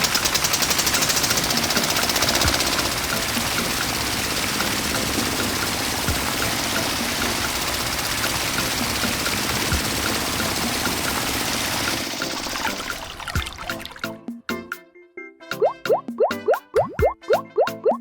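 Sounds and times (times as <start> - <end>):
small motor rushing and rattling: 0.0 - 13.4.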